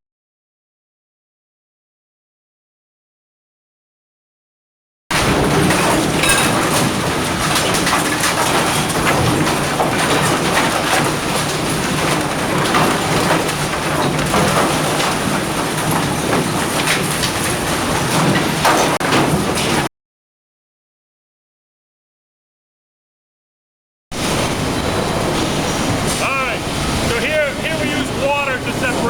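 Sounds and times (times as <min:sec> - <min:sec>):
debris clattering and rattling: 0:05.1 - 0:19.9
machinery humming: 0:24.2 - 0:29.0.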